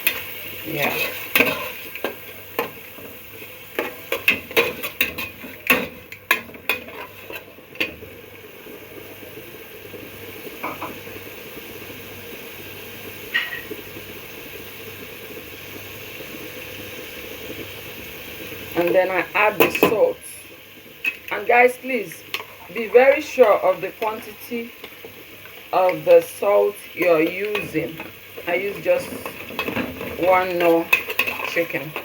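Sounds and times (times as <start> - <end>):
vegetables sizzling in oil: 0.0 - 32.0
spoon scraping a pot: 28.8 - 32.0.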